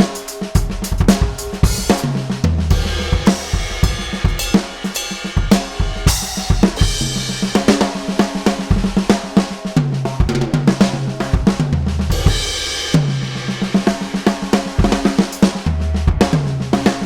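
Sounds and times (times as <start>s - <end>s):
drum kit playing fast: 0.0s - 17.0s
low bass notes: 15.7s - 16.8s.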